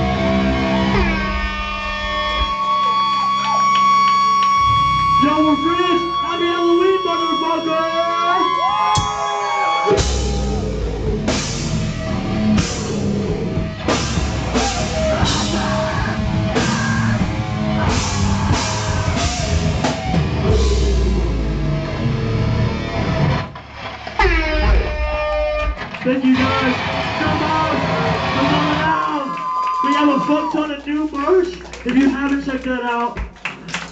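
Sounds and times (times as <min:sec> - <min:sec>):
drums and cymbal hits: 0:00.0 - 0:05.6, 0:08.8 - 0:21.8
live heavy rock band playing: 0:00.0 - 0:29.0
distorted guitars: 0:00.0 - 0:29.2.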